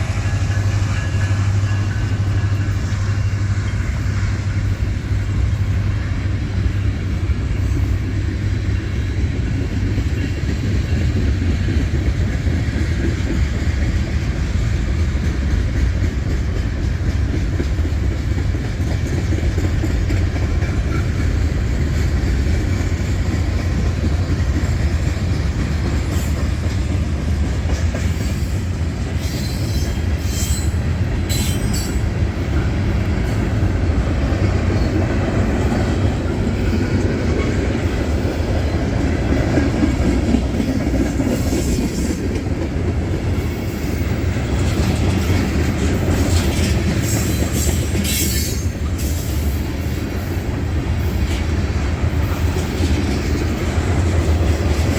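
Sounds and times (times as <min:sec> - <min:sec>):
train wheels rumbling on rail: 0:00.0 - 0:54.9
high-pitched wheel squeals: 0:29.2 - 0:32.0.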